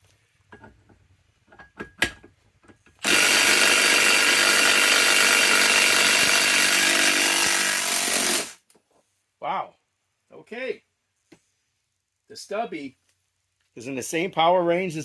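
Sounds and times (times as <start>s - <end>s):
impact wrench hammering on nut: 3.0s - 8.5s.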